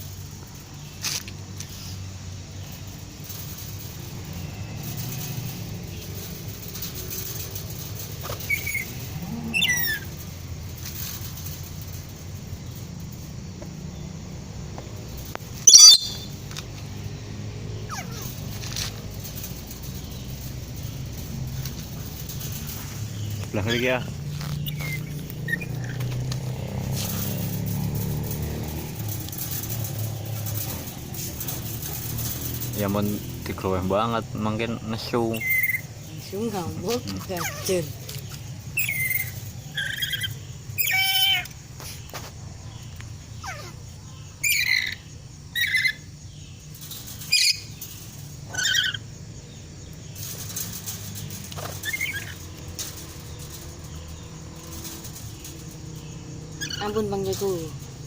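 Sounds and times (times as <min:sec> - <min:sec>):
low engine hum: 0:00.0 - 0:44.4, 0:46.2 - 0:58.0
parrot shrill calls: 0:15.6 - 0:16.3, 0:38.8 - 0:41.5, 0:48.5 - 0:49.0.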